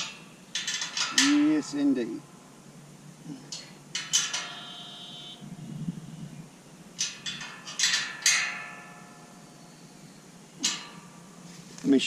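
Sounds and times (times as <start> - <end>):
metal gate latch clanking: 0.0 - 2.0, 3.5 - 5.0, 7.0 - 9.3, 10.6 - 11.3.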